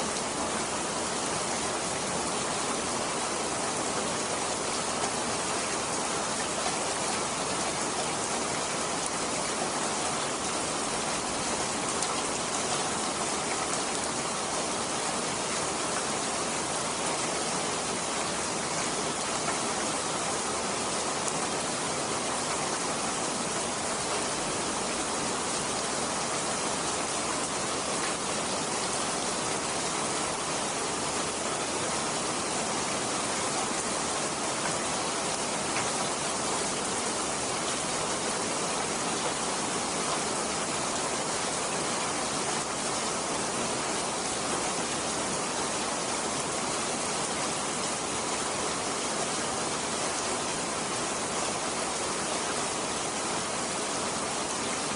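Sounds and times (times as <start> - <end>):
steady rain hiss: 0.0 - 54.9.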